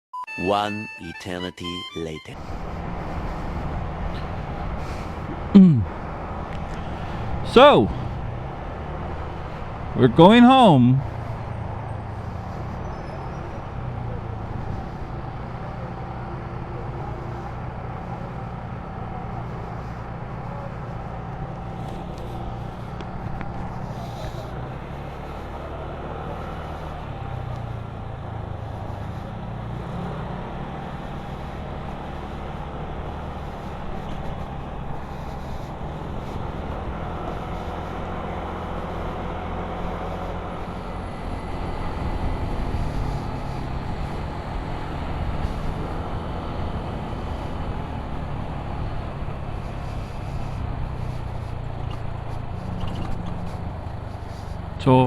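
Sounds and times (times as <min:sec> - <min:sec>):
road and wind noise: 0:02.3 - 0:55.0
scooter engine running: 0:11.1 - 0:54.7.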